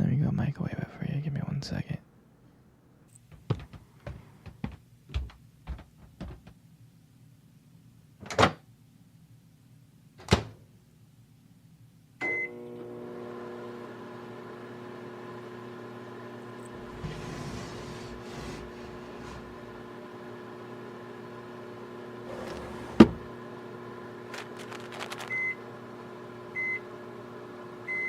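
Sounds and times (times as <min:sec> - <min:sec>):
microwave oven humming: 0:12.2 - 0:28.0.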